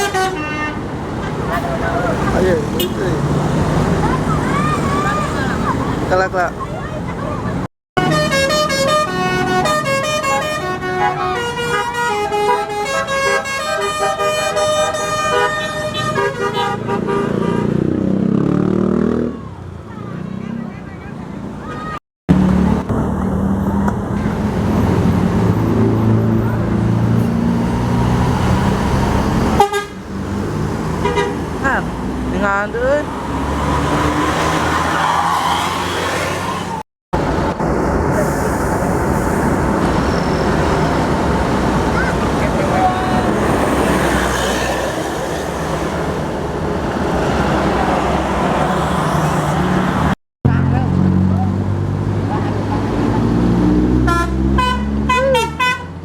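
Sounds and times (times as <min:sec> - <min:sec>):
bus engine running: 0:00.0 - 0:17.6, 0:36.4 - 0:56.0
road noise: 0:00.0 - 0:56.0
traffic noise: 0:00.0 - 0:56.0.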